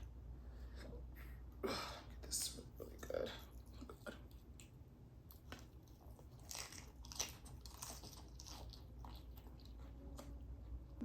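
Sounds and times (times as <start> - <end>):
chewing crunchy food: 2.8 - 10.4.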